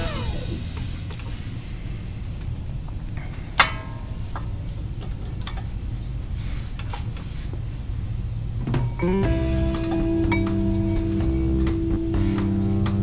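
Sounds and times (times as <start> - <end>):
steady low hum: 0.0 - 5.0, 7.7 - 13.0.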